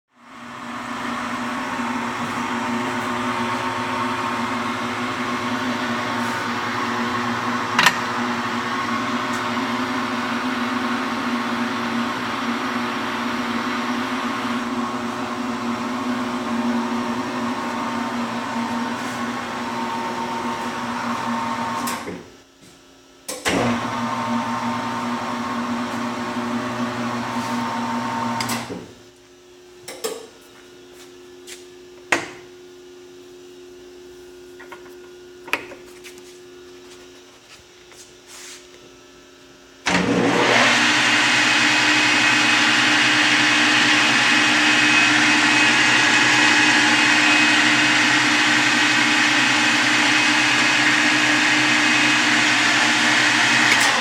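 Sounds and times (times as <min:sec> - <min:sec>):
metal lathe motor humming: 0:39.9 - 0:54.0.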